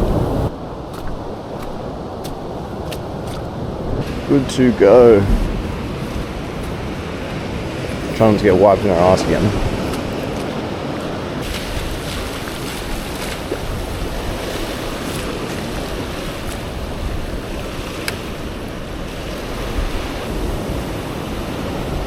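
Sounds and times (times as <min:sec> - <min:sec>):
ocean swell washing over rocks: 0:00.0 - 0:22.0
wind on microphone: 0:00.0 - 0:22.0.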